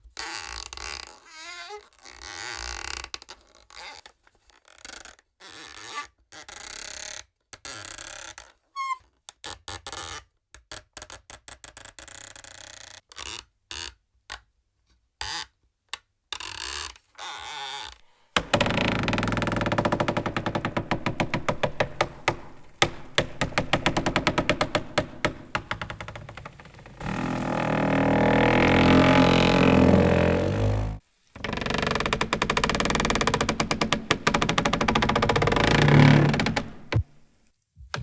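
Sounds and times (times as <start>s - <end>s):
creak machine creaking and groaning: 0.0s - 10.2s, 11.0s - 13.9s, 16.4s - 21.9s, 23.4s - 37.0s.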